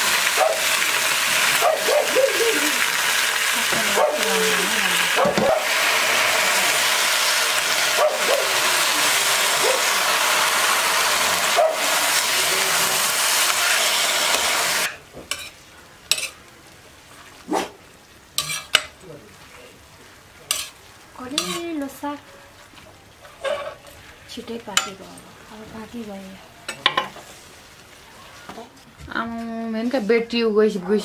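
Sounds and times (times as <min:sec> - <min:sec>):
greens sizzling in a frying pan: 0:00.0 - 0:31.0
spatula scraping and knocking in pan: 0:16.1 - 0:16.4, 0:18.4 - 0:18.9, 0:21.4 - 0:21.6.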